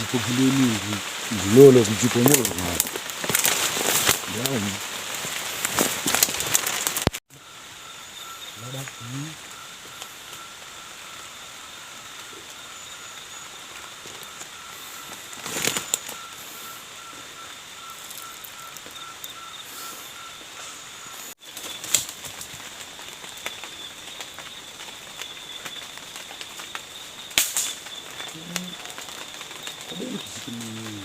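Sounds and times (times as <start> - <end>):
rustle: 0.0 - 31.0
high pulsing trills: 7.3 - 21.4.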